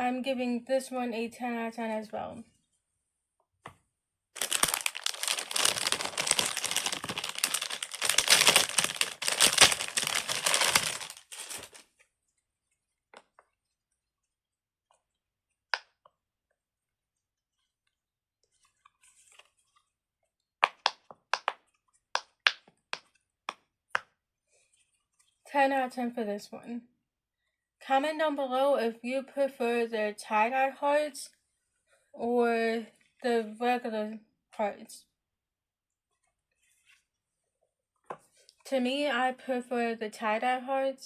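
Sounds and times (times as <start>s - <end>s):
silicone toy crackling and rustling: 4.4s - 14.3s
sharp pops of silicone bubbles: 20.6s - 21.6s, 22.2s - 24.2s.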